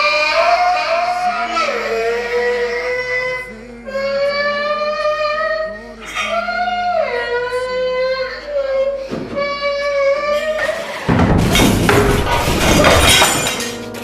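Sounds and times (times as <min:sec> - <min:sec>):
high voice singing: 0:00.0 - 0:11.1
plucked guitar: 0:11.1 - 0:14.0.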